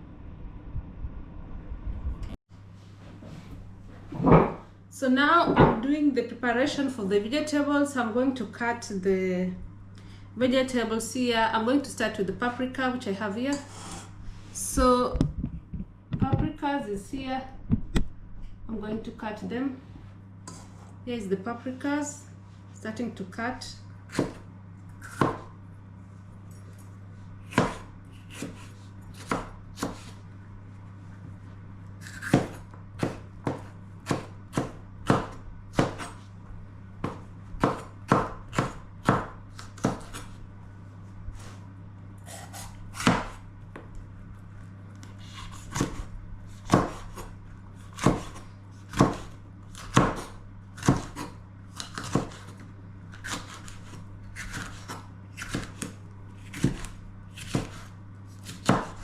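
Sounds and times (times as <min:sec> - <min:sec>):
knife chopping on cutting board: 0:24.1 - 0:24.4, 0:25.0 - 0:25.5, 0:27.5 - 0:30.2, 0:32.0 - 0:36.2, 0:37.0 - 0:40.4, 0:42.3 - 0:43.8, 0:45.2 - 0:47.3, 0:47.9 - 0:52.6, 0:53.2 - 0:59.0.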